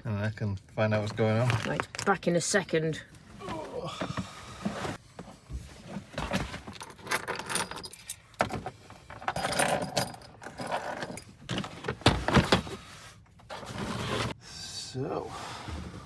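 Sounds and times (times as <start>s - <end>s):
tools clattering and clinking: 1.1s - 2.2s, 4.6s - 12.8s.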